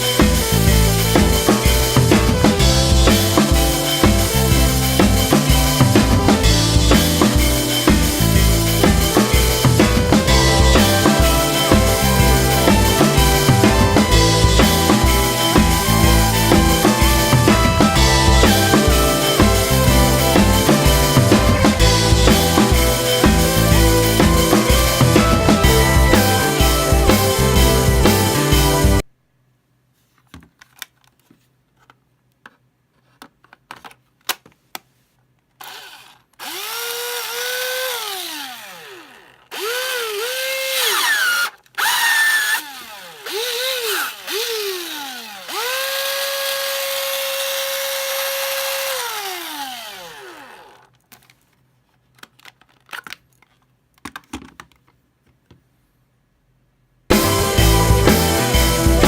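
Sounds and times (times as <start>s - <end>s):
cordless drill motor whining: 35.6s - 50.9s.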